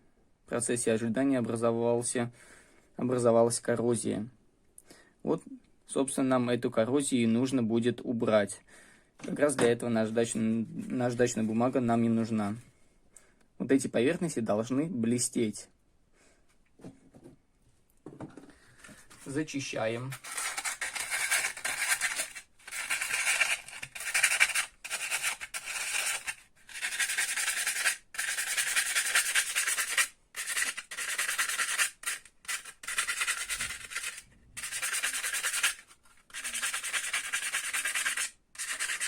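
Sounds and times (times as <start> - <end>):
sandpaper rubbing on steel: 20.1 - 39.0.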